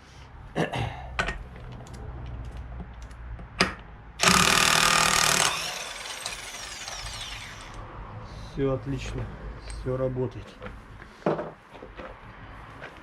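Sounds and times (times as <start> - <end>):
impact wrench hammering: 3.6 - 7.8.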